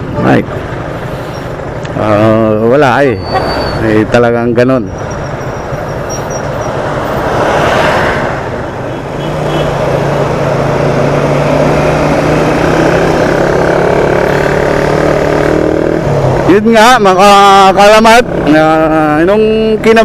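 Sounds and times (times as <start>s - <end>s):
motorcycle engine running: 10.7s - 16.6s.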